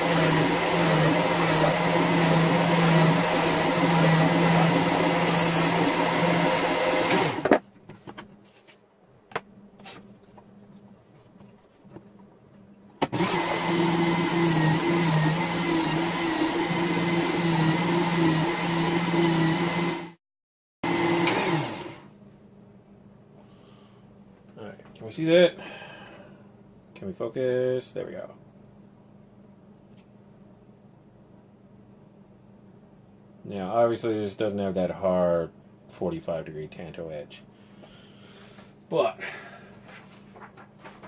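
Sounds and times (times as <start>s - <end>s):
sharpener belt motor humming: 0.0s - 7.5s.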